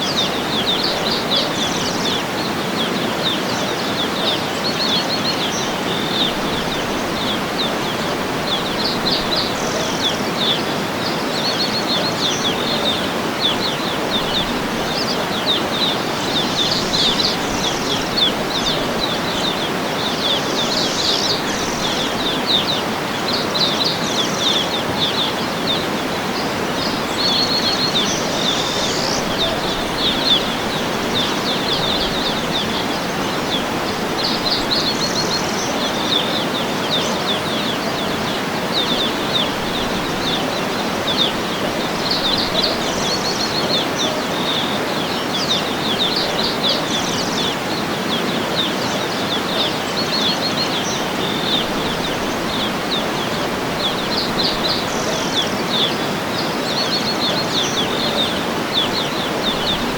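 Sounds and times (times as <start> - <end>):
birds chirping and trilling: 0.0 - 59.9
waterfall rushing: 0.0 - 59.9.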